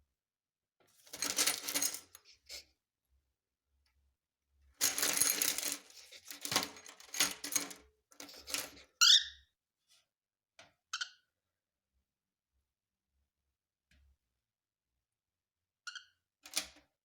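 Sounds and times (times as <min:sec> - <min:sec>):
cockatiel chirping: 0:09.0 - 0:09.3.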